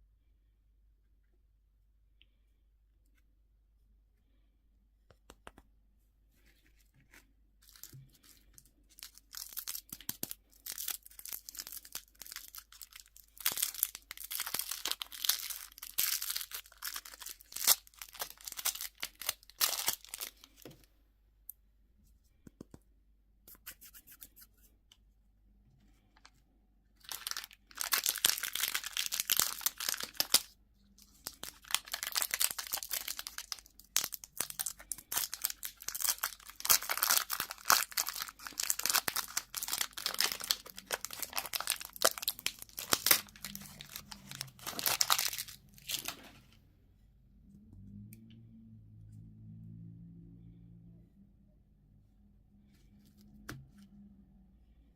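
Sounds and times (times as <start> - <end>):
candy wrappers crinkling: 7.6 - 20.8, 27.0 - 46.2.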